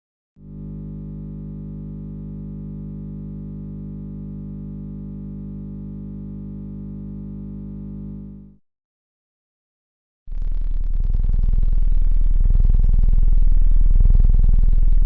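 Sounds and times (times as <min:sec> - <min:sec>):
low buzzy electronic drone: 0:00.4 - 0:07.2, 0:10.3 - 0:15.0.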